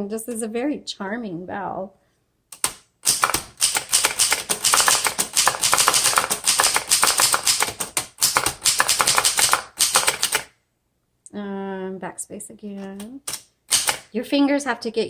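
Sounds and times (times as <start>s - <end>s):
manual typewriter typing: 2.6s - 10.5s, 13.2s - 14.1s.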